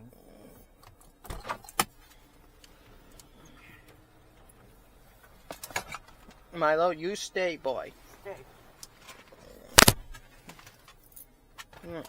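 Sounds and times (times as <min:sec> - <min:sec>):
car engine idling: 0:01.9 - 0:11.6
handling clicks: 0:09.8 - 0:10.1.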